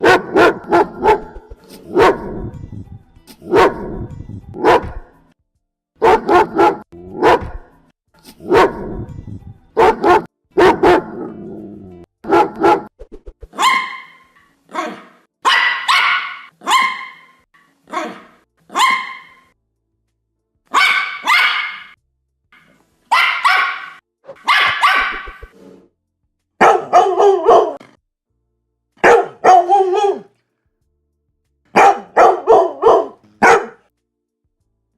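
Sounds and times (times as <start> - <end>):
dogs barking: 0.0 - 2.4, 3.4 - 4.0, 4.6 - 5.0, 6.0 - 7.6, 8.4 - 9.0, 9.8 - 11.4, 12.2 - 12.9, 13.5 - 19.5, 20.7 - 22.0, 23.1 - 25.5, 26.6 - 27.8, 29.0 - 30.3, 31.7 - 33.8.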